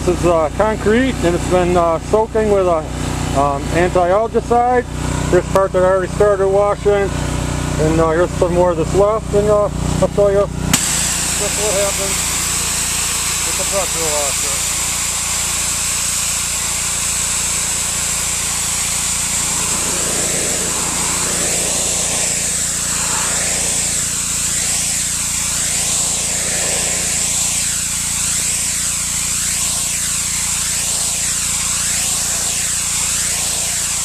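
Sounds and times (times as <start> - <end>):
pressure washer motor drone: 0.0 - 34.0
high-pressure water jet hissing: 10.7 - 34.0.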